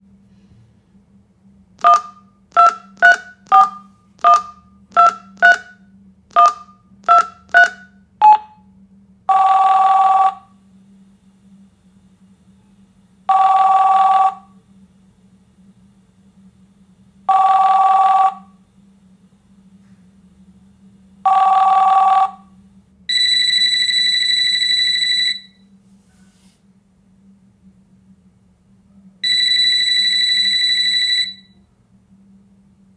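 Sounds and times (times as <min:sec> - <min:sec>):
phone ringing tones: 0:01.8 - 0:05.8, 0:06.4 - 0:08.5, 0:09.3 - 0:10.5, 0:13.3 - 0:14.5, 0:17.3 - 0:18.5, 0:21.3 - 0:22.5, 0:23.1 - 0:25.6, 0:29.2 - 0:31.6
high steady beep: 0:01.8 - 0:08.5
keypad dialling tones: 0:01.8 - 0:08.5.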